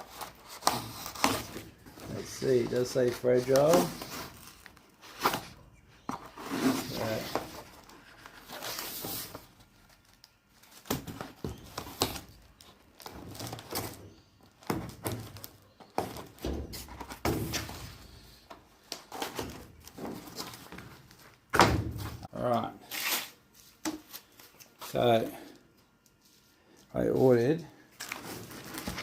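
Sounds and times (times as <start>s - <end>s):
packaging rustling and scraping: 0.0s - 21.4s, 28.0s - 29.0s.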